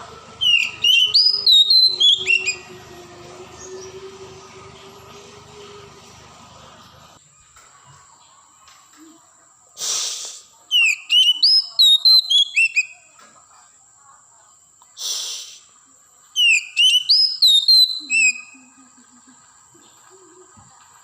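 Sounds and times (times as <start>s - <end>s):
bird singing whistled notes: 0.4s - 4.4s, 10.7s - 13.1s, 16.4s - 18.8s.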